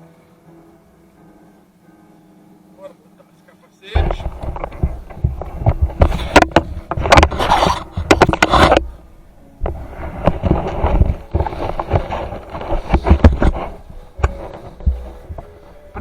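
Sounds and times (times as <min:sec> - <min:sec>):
gear handling knocks and rustles: 0:04.0 - 0:09.0, 0:09.6 - 0:16.0.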